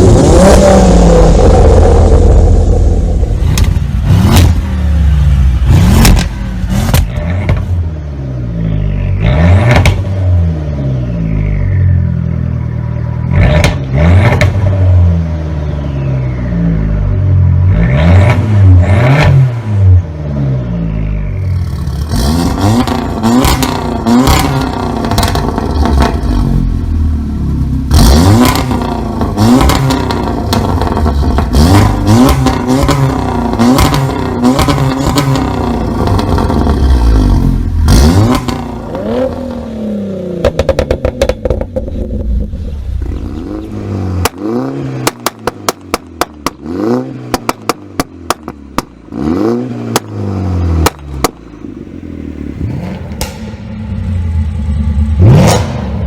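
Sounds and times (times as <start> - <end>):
car engine revving: 0.0 - 56.0
exhaust pops and bangs: 6.0 - 7.7, 9.7 - 10.1, 40.4 - 43.2, 45.0 - 46.6, 47.3 - 49.0, 50.8 - 51.5.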